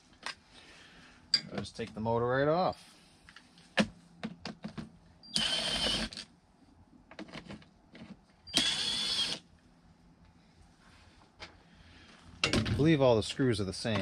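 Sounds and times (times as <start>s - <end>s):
cordless drill spinning: 5.3s - 6.2s, 8.5s - 9.4s.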